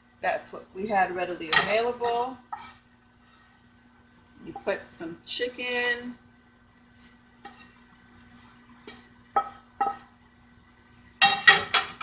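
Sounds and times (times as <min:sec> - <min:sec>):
utensil clinking against dishes: 0:11.2 - 0:12.0.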